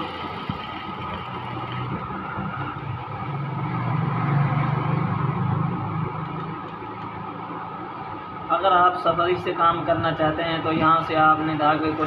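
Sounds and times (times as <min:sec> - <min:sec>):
sewing machine running: 0:00.0 - 0:02.4.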